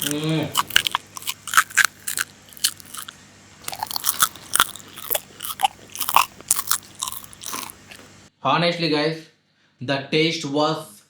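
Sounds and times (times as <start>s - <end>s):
crunching and chewing: 0.0s - 8.3s.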